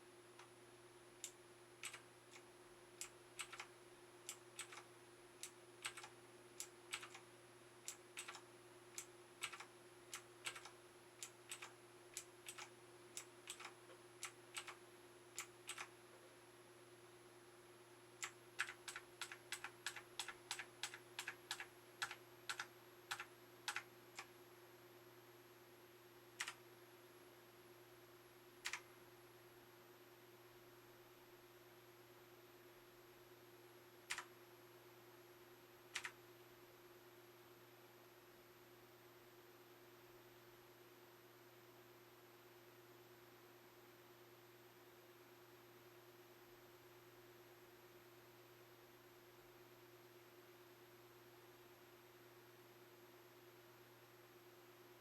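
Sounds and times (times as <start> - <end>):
faint steady hum: 0.0 - 55.0
mechanical keyboard clicks: 1.2 - 2.4, 3.0 - 3.7, 4.3 - 6.1, 6.9 - 7.2, 7.9 - 8.4, 9.0 - 14.8, 15.4 - 15.9, 18.2 - 24.3, 26.4 - 26.6, 28.6 - 28.9, 34.1 - 34.3, 36.0 - 36.2.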